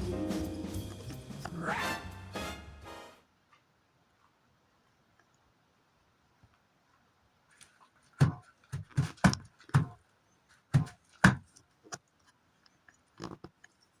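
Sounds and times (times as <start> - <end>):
sharp knocks and thumps: 8.2 - 10.0, 10.7 - 11.4.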